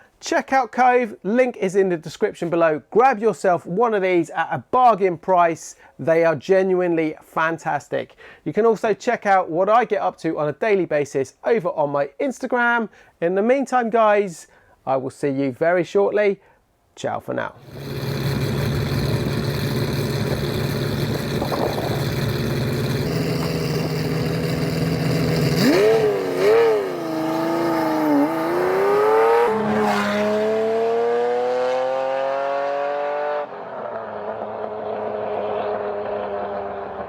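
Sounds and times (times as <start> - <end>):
car engine revving: 17.6 - 37.0.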